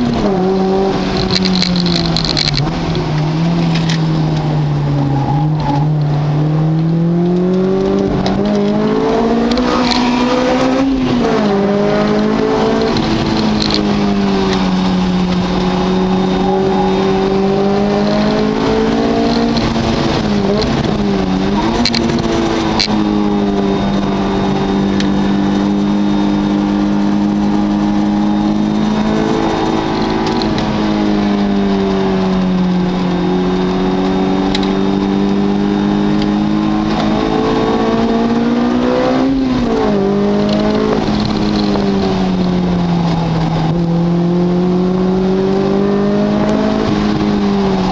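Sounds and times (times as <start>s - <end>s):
car engine revving: 0.0s - 47.9s.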